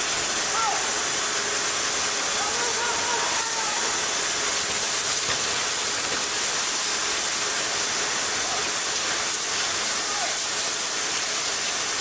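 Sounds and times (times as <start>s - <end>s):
forge machinery hissing: 0.0s - 12.0s.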